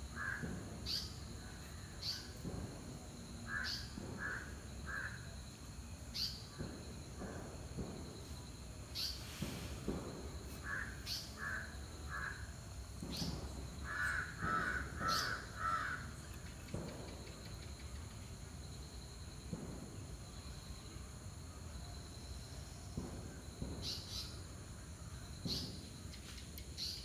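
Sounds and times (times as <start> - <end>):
bird calling: 10.6 - 17.4.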